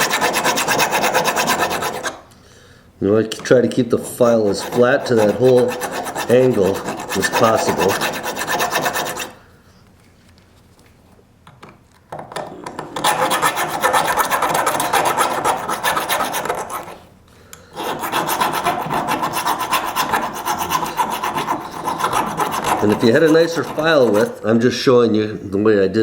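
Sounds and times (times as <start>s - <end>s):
file rasping on steel blade: 0.0s - 2.2s, 4.0s - 9.4s, 12.7s - 17.0s, 17.8s - 24.4s.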